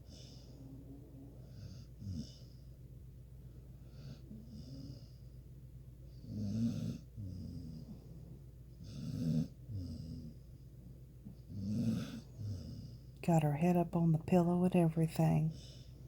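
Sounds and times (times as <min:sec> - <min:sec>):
pet snoring: 0:01.4 - 0:02.6, 0:03.8 - 0:05.3, 0:06.1 - 0:10.6, 0:11.3 - 0:13.2.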